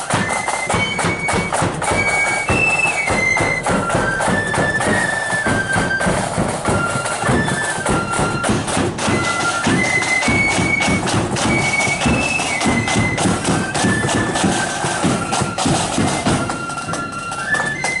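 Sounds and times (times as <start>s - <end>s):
drums pounding: 0.0s - 18.0s
flute melody: 0.0s - 18.0s.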